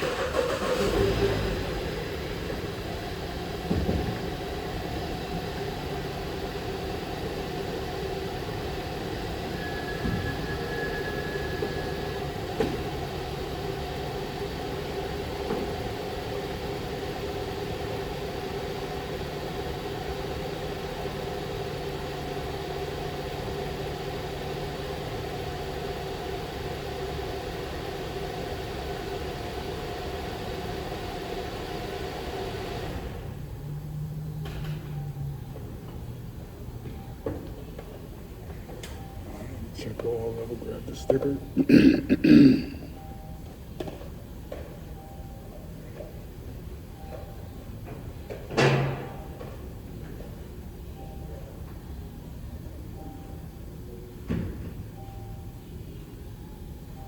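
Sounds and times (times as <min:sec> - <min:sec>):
car engine idling: 0:00.0 - 0:41.7.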